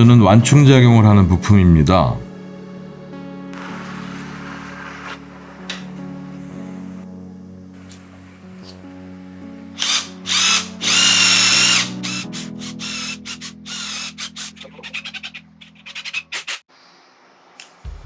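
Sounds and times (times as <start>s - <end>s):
background music: 0.0s - 15.9s
power drill running: 9.8s - 14.5s.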